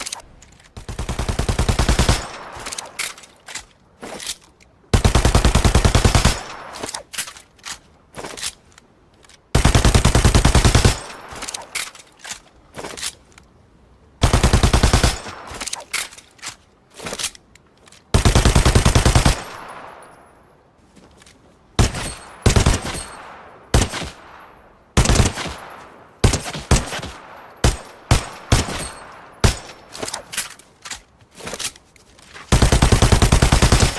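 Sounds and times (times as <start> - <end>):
small clicks: 0.0 - 0.9.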